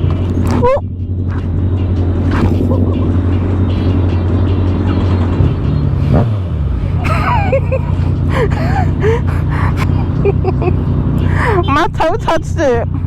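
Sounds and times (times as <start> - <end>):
motorcycle engine running: 0.0 - 13.0
person gasping: 8.2 - 9.9, 11.2 - 11.7.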